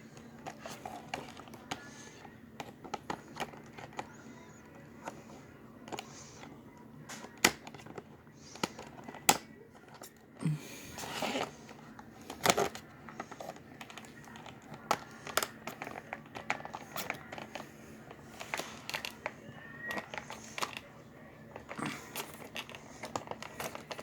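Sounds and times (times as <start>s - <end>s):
packaging clicks and taps: 0.1s - 10.2s, 11.0s - 24.0s
packaging rustling: 11.0s - 24.0s.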